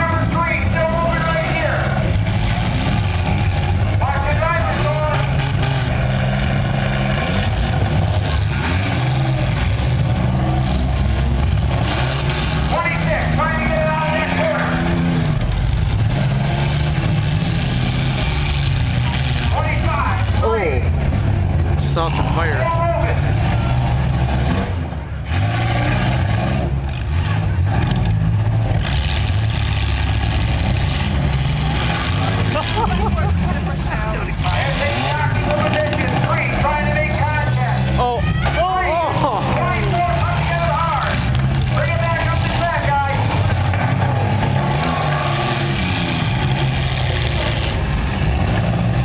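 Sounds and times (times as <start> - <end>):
car engines droning and revving: 0.0 - 49.0.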